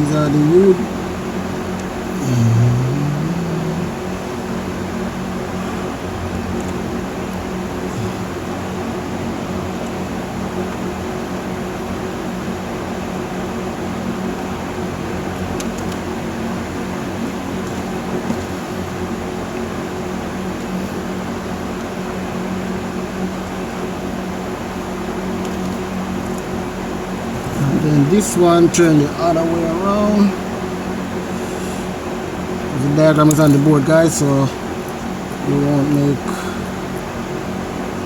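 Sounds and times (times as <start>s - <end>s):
fan whirring hum: 0.0s - 38.0s
low drone: 2.0s - 4.7s, 6.9s - 9.4s.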